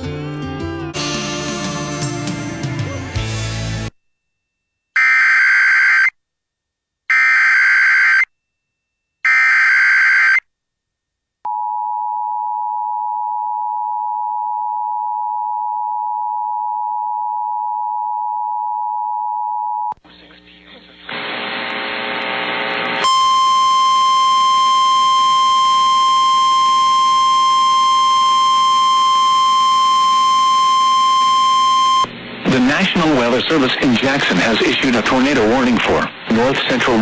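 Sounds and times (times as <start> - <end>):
two-tone attention signal: 23.0 - 32.1.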